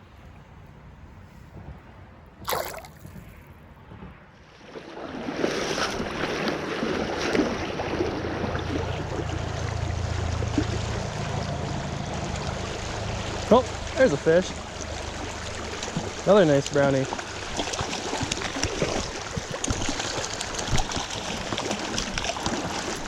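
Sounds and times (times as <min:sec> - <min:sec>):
river water splashing and gurgling: 0:02.4 - 0:03.4, 0:04.4 - 0:23.0.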